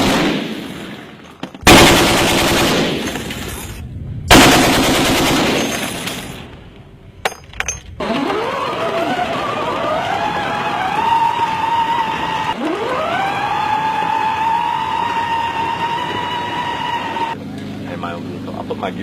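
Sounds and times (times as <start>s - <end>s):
automatic gunfire bursts: 1.6s - 3.0s, 4.3s - 5.8s.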